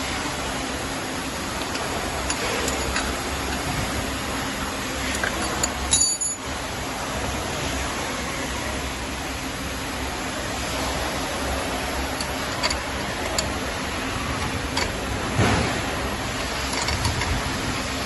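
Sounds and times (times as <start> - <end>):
background hum and hiss: 0.0 - 18.0
metal clink: 5.2 - 6.4.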